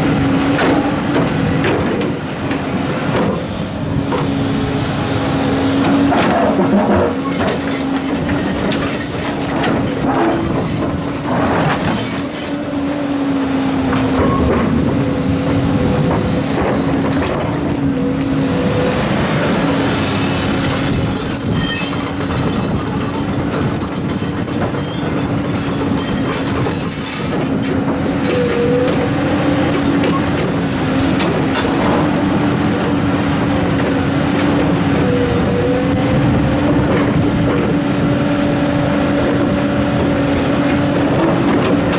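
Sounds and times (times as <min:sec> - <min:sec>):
excavator engine hum: 0:00.0 - 0:41.9
high metallic squeals: 0:07.2 - 0:13.3, 0:20.2 - 0:27.5.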